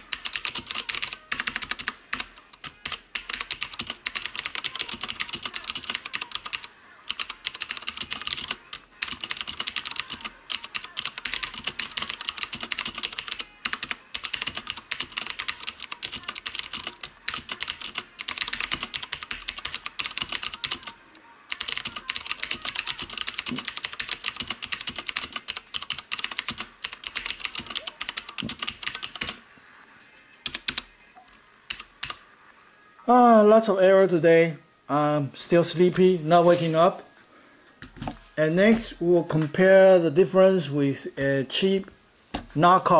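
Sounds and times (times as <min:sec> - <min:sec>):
clicky mechanical keyboard typing: 0:00.0 - 0:29.4, 0:30.5 - 0:30.9, 0:31.7 - 0:32.2.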